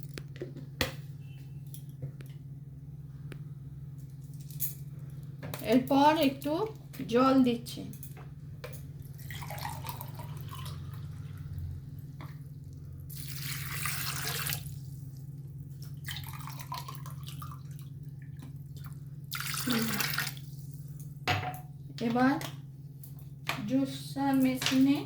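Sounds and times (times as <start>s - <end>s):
low steady hum: 0.0s - 25.0s
water pouring: 9.0s - 15.2s, 15.8s - 20.7s.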